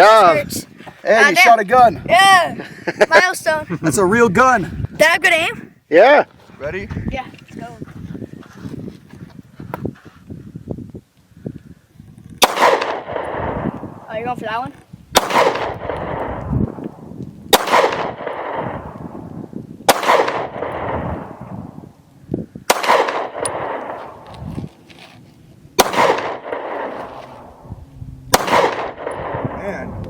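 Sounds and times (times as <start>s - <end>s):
gunshots with echo: 12.4s - 13.7s, 15.2s - 16.4s, 17.5s - 19.0s, 19.9s - 21.4s, 22.7s - 24.2s, 25.8s - 27.1s, 28.3s - 29.6s.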